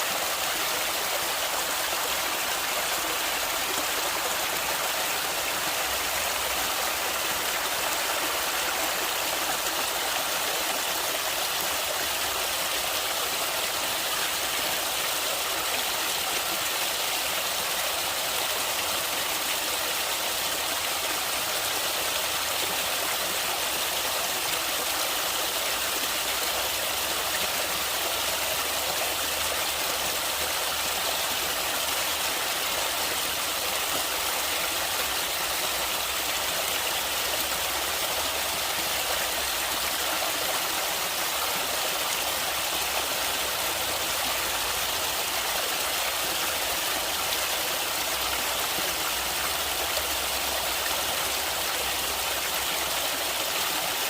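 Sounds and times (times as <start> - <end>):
water rushing: 0.0 - 18.2.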